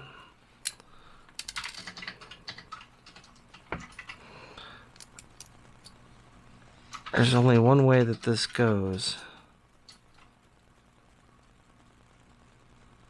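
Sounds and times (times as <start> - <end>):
plastic parts clicking and tapping: 0.6 - 4.2.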